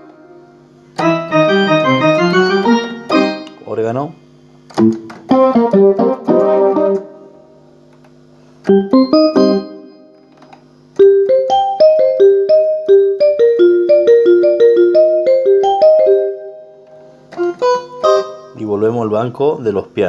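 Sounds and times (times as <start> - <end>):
keyboard chords and held notes: 0.0 - 4.0, 4.7 - 18.9.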